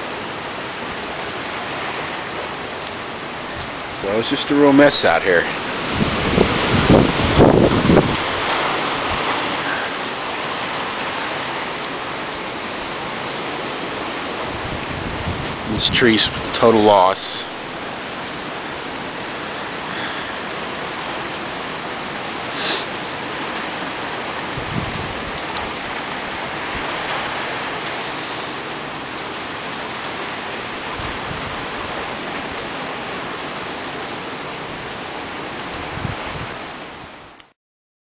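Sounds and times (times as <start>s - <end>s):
rain and wind hiss: 0.0s - 37.5s
gusts buffeting the microphone: 1.0s - 33.7s, 34.7s - 37.3s.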